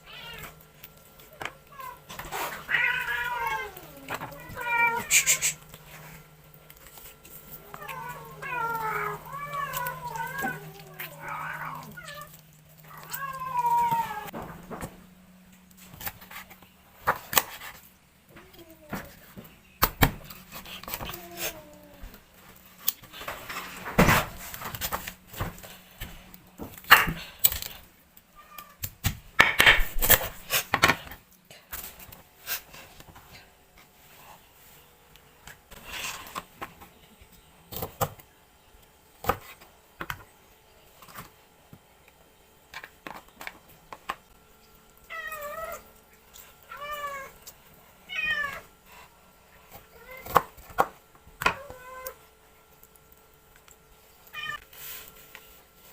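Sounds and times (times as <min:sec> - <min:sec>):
cat meowing: 0:00.0 - 0:00.6, 0:02.6 - 0:05.5, 0:07.7 - 0:12.3, 0:12.9 - 0:14.3
kitchen items clattering: 0:13.6 - 0:15.1.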